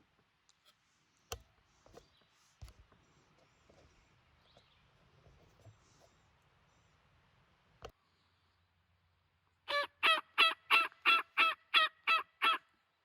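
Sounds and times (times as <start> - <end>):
turkey yelps: 9.7 - 12.6.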